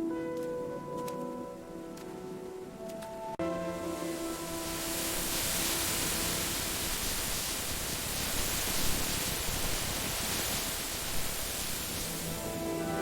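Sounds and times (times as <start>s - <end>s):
faint music tones: 0.0s - 6.8s, 12.0s - 13.0s
steady rain hiss: 0.5s - 13.0s.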